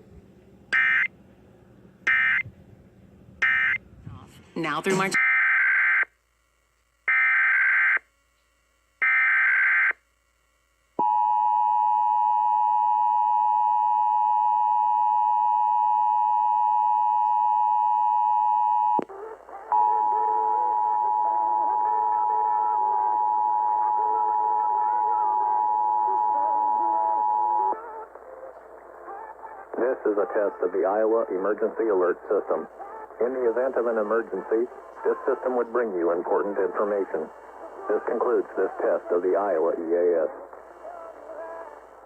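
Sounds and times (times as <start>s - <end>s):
screeching data tones: 0.8s - 1.1s, 2.1s - 2.4s, 3.4s - 3.8s
faint program audio: 10.4s - 42.0s.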